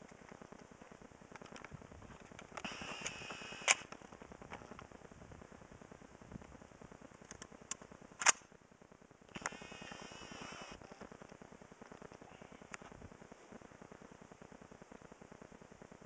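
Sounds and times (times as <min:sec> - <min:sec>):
faint click: 0:09.3 - 0:09.6.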